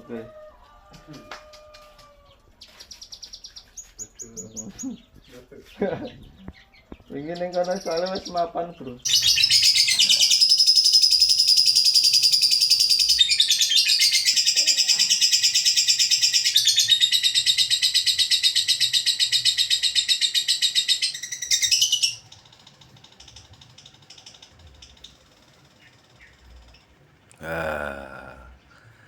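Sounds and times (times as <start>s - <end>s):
songbird trilling: 7.2s - 26.9s.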